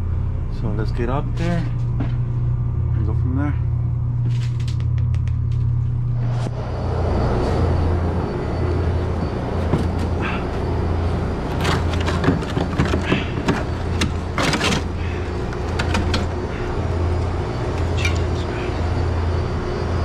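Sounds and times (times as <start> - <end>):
low machine hum: 0.0 - 20.0
knocks and clatter from handling: 11.4 - 16.4.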